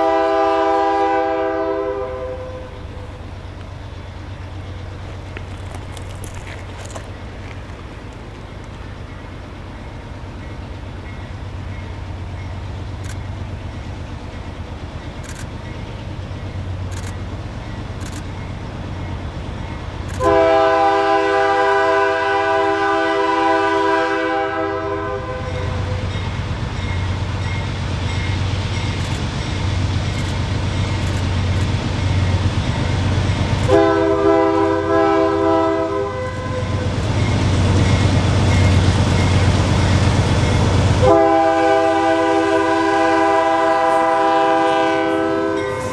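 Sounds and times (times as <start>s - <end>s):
locomotive air horn chord: 0.0s - 3.2s, 20.2s - 26.2s, 33.6s - 36.9s, 40.9s - 45.9s
diesel locomotive engine rumble: 0.0s - 45.9s.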